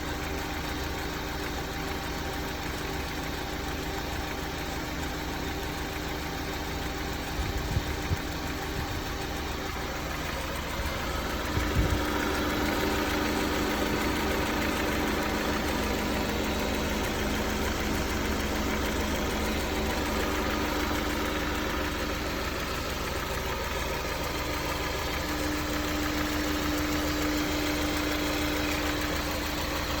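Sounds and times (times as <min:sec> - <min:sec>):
car engine idling: 0:00.0 - 0:30.0
engine rattle or knock: 0:00.2 - 0:30.0.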